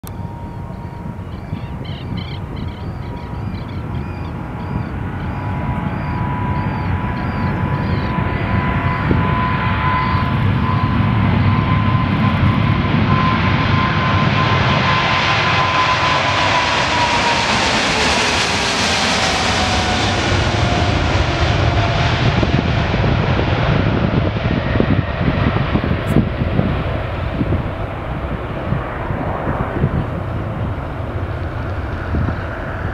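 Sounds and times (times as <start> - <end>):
whining tone dropping in pitch: 0.0 - 22.6
jet engines at take-off thrust: 0.0 - 32.9.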